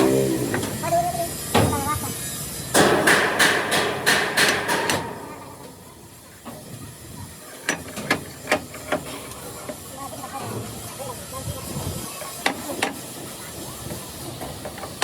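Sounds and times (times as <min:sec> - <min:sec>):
hammer striking metal: 0:02.8 - 0:05.7.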